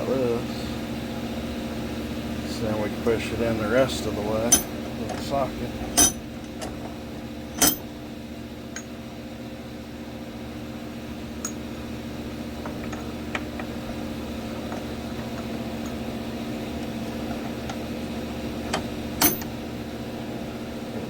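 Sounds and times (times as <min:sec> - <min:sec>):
steady hum: 0:00.0 - 0:21.0
metal clink: 0:04.5 - 0:04.8, 0:06.0 - 0:06.3, 0:07.6 - 0:07.9, 0:11.4 - 0:11.7, 0:19.2 - 0:19.5.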